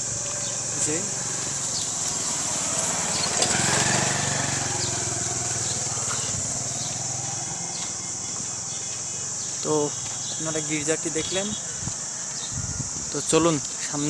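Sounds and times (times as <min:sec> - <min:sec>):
small engine running: 0:00.0 - 0:09.0
crickets chirping: 0:00.0 - 0:14.0.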